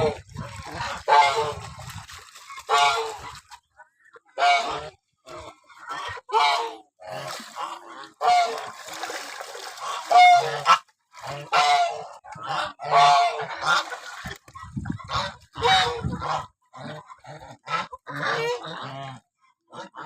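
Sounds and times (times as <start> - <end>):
geese honking: 2.5 - 3.4, 4.3 - 8.8, 9.8 - 19.2.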